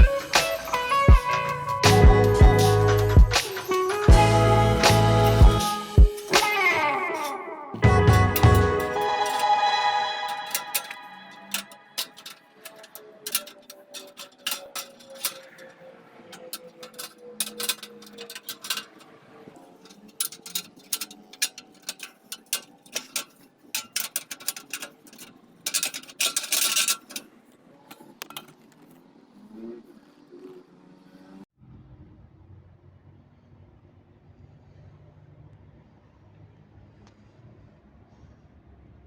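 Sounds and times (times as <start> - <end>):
metallic clinks and knocks: 0.0 - 28.7
steel rods scraping: 0.1 - 28.7.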